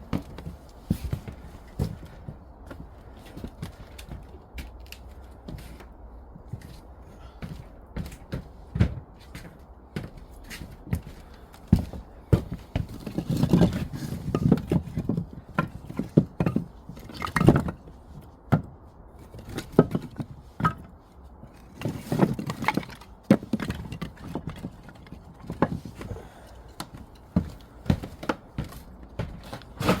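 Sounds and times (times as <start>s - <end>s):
knocks and clacks of objects: 7.4s - 30.0s.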